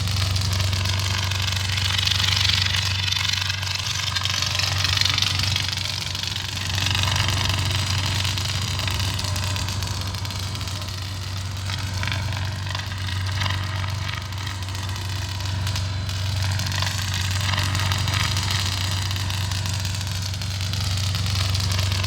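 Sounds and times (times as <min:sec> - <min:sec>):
lightsaber hum with crackling hiss: 0:00.0 - 0:22.0.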